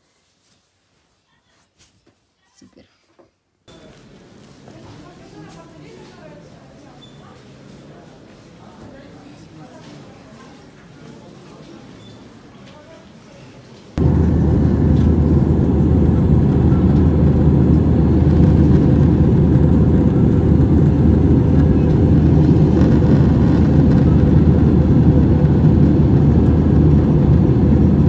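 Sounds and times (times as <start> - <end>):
vehicle rumbling in motion: 14.0 - 28.0.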